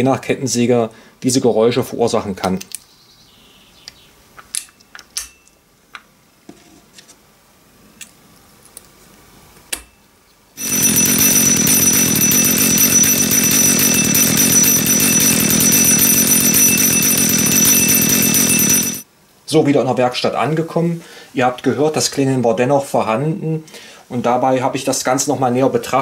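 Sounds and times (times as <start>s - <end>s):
high metallic ringing: 10.6s - 19.0s.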